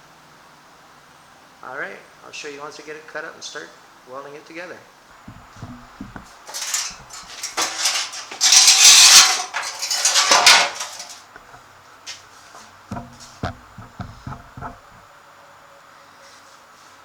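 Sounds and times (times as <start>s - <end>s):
metal clanks and knocks: 5.2s - 11.6s, 12.9s - 15.0s
metal scraping and rattling: 5.2s - 11.6s, 12.9s - 15.0s.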